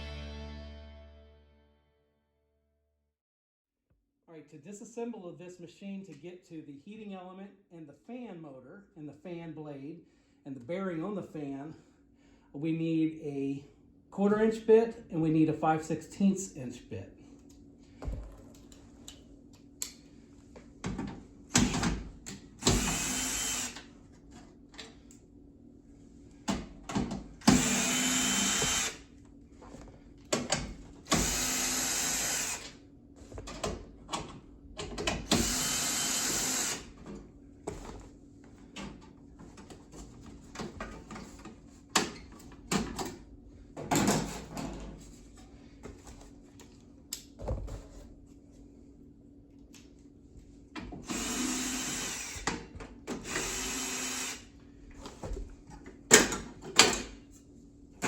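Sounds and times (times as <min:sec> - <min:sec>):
power drill driver bursts: 0:22.6 - 0:23.9, 0:27.5 - 0:29.0, 0:31.1 - 0:32.7, 0:35.3 - 0:36.9, 0:51.0 - 0:52.5, 0:53.2 - 0:54.5.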